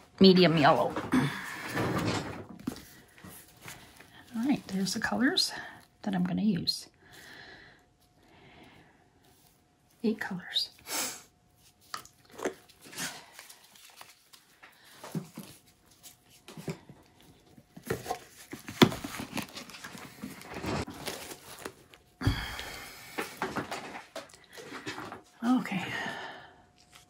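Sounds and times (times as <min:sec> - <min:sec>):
rustling and scraping: 0:00.6 - 0:05.4, 0:11.6 - 0:22.1.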